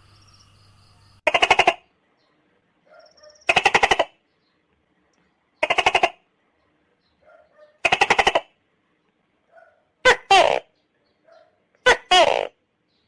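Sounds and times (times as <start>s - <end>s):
gecko rattling call: 3.0s - 4.2s.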